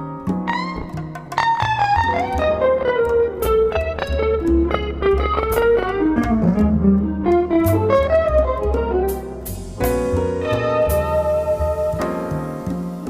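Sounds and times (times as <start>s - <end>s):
guitar melody: 0.0s - 13.0s
low bass: 1.6s - 13.0s.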